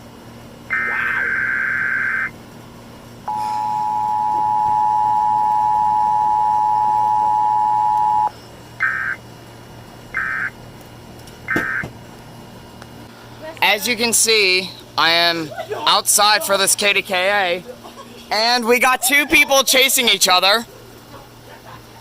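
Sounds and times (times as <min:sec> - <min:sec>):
buzzy digital data bursts: 0:00.7 - 0:02.3
two-tone attention signal: 0:00.7 - 0:02.3, 0:03.3 - 0:09.2.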